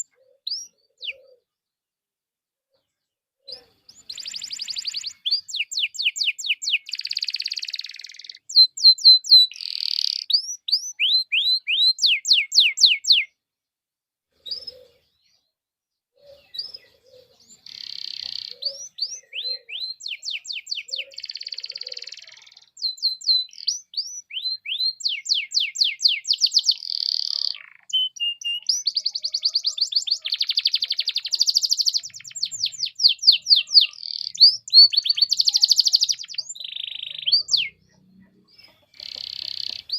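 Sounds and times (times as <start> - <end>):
canary singing trills: 0.0 - 1.5, 2.8 - 13.4, 14.4 - 15.5, 16.2 - 39.9.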